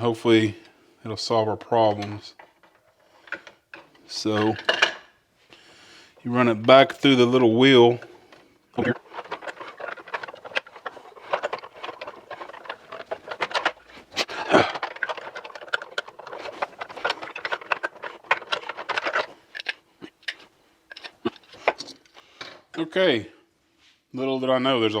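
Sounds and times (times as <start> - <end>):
plastic parts clicking and rattling: 1.7 - 5.1, 6.2 - 22.8.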